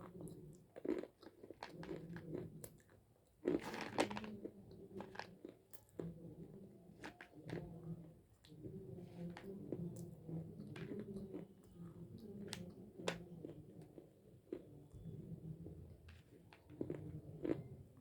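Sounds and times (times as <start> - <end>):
dry crunchy chewing: 0.1 - 6.2, 16.4 - 17.8.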